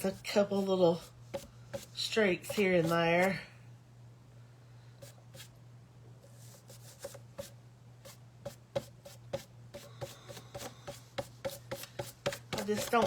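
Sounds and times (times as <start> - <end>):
faint low hum: 0.0 - 13.0
paintbrush tapping: 1.3 - 3.4, 6.4 - 13.0.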